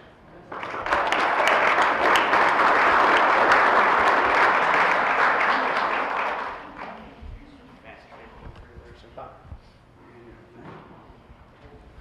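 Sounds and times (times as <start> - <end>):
audience applauding: 0.5 - 7.2.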